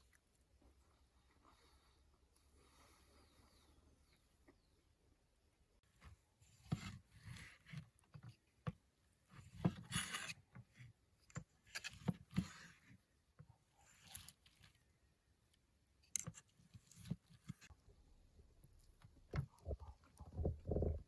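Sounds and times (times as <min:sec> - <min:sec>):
knocks and scrapes of handling: 0:05.8 - 0:14.9, 0:16.0 - 0:18.0, 0:18.7 - 0:21.0.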